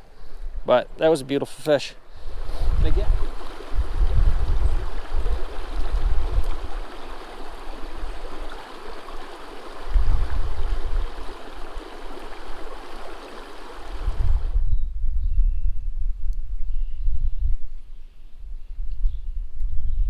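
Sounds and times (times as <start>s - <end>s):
stream water rushing: 2.2s - 14.4s
wind buffeting microphone: 2.2s - 20.0s.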